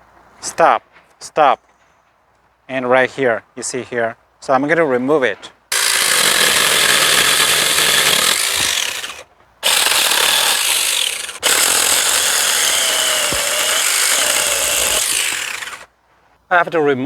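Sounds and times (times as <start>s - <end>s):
saw cutting wood: 5.7s - 15.9s.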